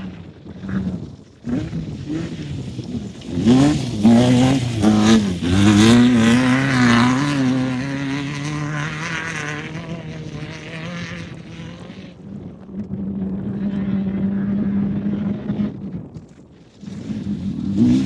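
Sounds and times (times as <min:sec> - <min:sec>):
race car engine revving: 0:00.0 - 0:12.3, 0:16.9 - 0:18.0.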